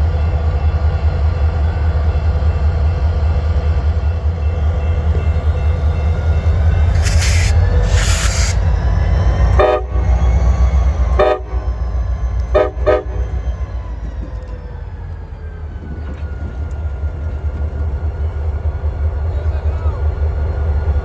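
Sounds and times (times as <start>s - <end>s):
low rumble of passing train: 0.0s - 21.0s
locomotive horn blasts: 9.6s - 10.2s, 11.2s - 11.7s, 12.5s - 13.4s.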